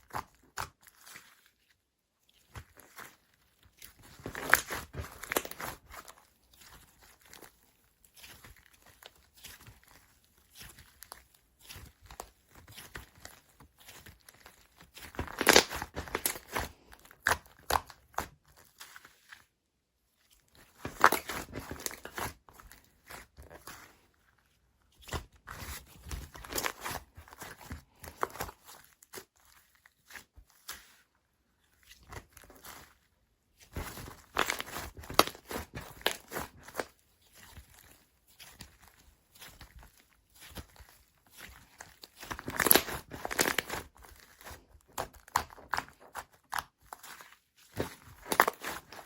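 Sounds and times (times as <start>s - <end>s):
slime squished by hand: 0.0s - 19.4s, 31.7s - 49.0s.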